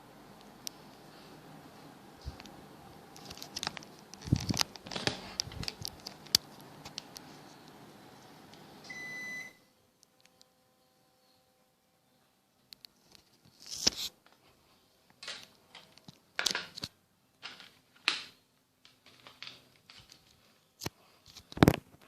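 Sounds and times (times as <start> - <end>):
air conditioner fan noise: 0.0 - 22.0
short electronic beep: 8.9 - 9.6
clicks and rattles: 15.2 - 22.0.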